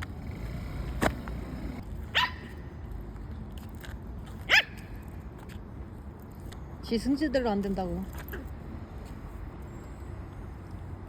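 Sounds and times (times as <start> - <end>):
small dog barking: 2.1 - 2.5, 4.5 - 4.8.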